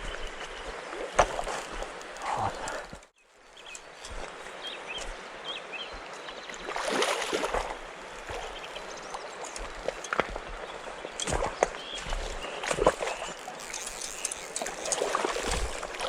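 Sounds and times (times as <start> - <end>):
stream running over stones: 0.0 - 16.0
splashing water: 5.9 - 16.0.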